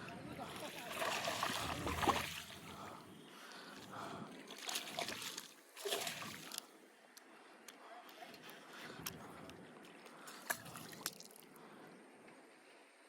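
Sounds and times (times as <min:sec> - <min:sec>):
water sloshing and splashing: 0:00.0 - 0:03.0, 0:03.6 - 0:06.7, 0:09.7 - 0:11.6.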